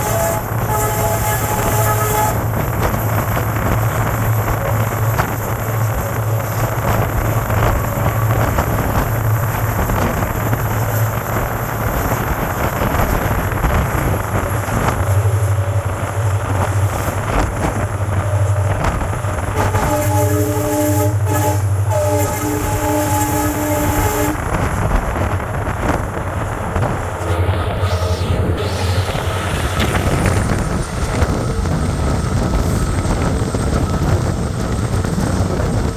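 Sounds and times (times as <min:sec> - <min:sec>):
diesel locomotive engine hum: 0:00.0 - 0:35.9
rushing wind: 0:00.0 - 0:35.9.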